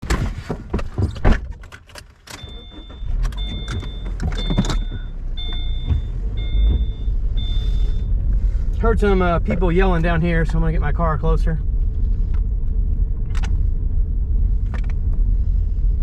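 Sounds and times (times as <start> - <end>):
low car rumble: 0.0 - 16.0
car warning chime beeping: 2.3 - 8.2.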